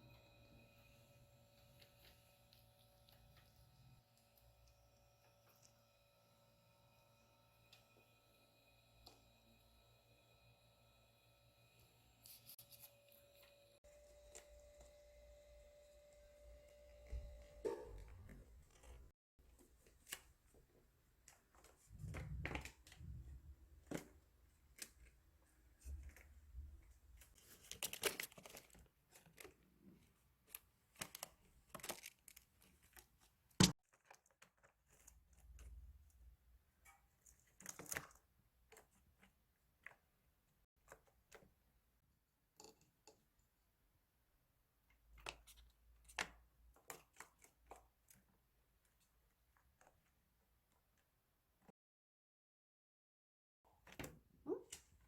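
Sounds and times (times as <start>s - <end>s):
chipmunk rustling and crinkling: 25.8s - 36.2s.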